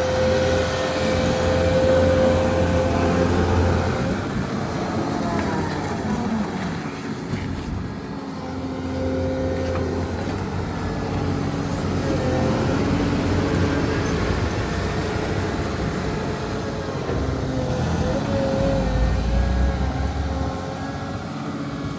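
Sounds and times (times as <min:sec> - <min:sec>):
diesel engine running: 0:00.0 - 0:21.9
high whine: 0:00.0 - 0:21.9.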